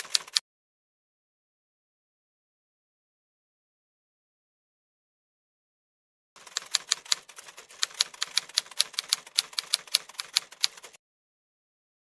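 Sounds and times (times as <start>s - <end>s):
typewriter keystrokes clacking: 0.0s - 0.4s, 6.4s - 11.0s.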